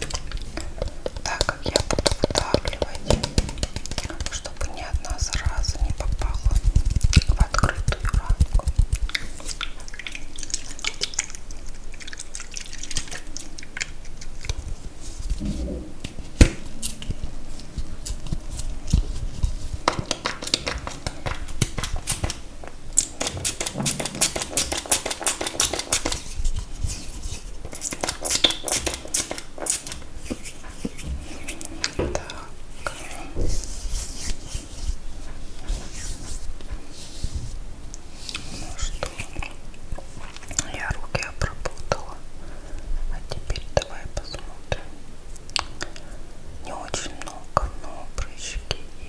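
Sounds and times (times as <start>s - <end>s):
sharp knock: 2.9s - 4.3s.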